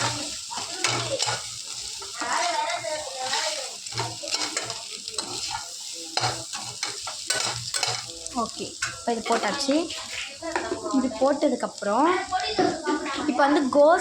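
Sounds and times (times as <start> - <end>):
stirring tool scraping a pan: 0.0 - 11.4
food sizzling in oil: 0.0 - 14.0.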